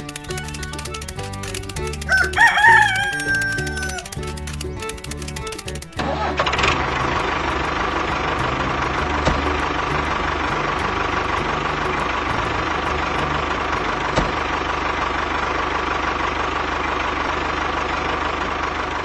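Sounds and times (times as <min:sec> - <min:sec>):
small engine running: 0:00.0 - 0:19.0
sharp knock: 0:07.1 - 0:14.7.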